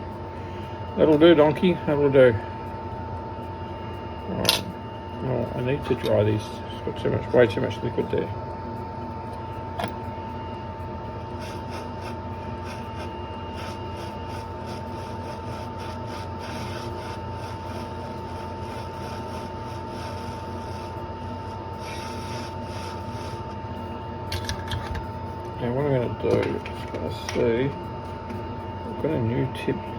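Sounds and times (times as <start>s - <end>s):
equipment hum and whine: 0.0s - 29.9s
rubbing on circuit board: 11.1s - 24.0s.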